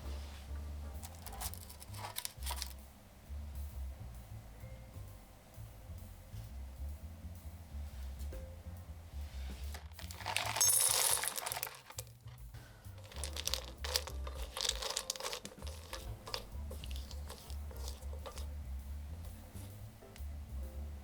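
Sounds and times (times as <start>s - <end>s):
soft background music with beat: 0.0s - 21.0s
crinkling and rustling: 1.0s - 2.8s, 9.6s - 12.4s, 13.0s - 18.6s.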